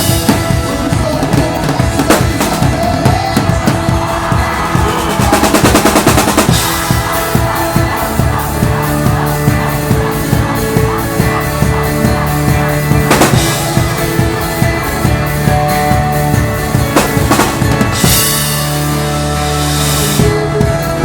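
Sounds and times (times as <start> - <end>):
band playing worship song: 0.0 - 21.0
drum kit beat: 0.0 - 21.0.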